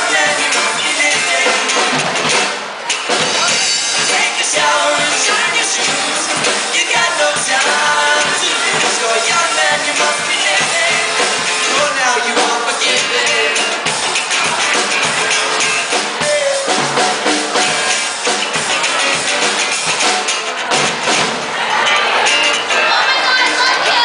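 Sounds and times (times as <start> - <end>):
person singing: 0.0 - 2.1, 3.2 - 15.5, 16.2 - 17.9
band playing a song: 0.0 - 24.0
drum kit beat: 0.0 - 24.0.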